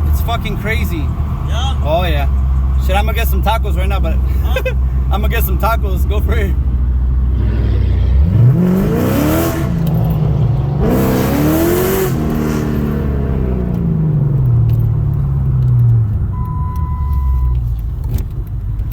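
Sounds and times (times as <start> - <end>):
car engine revving: 0.0 - 18.9
short steady beep: 16.3 - 17.6.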